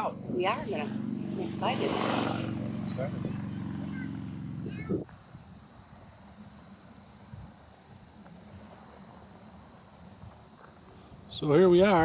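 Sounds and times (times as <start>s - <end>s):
insects trilling: 5.0s - 12.0s.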